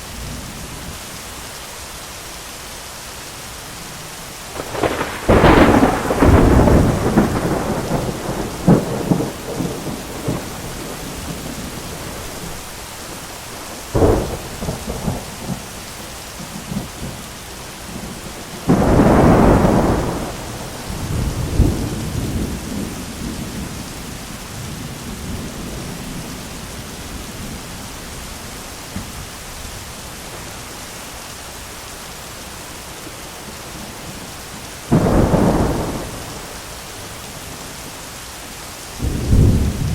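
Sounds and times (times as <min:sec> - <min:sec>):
steady rain: 0:00.0 - 0:39.9
thunder rumbling: 0:04.5 - 0:17.2, 0:17.9 - 0:30.6, 0:34.9 - 0:37.7, 0:39.0 - 0:39.9.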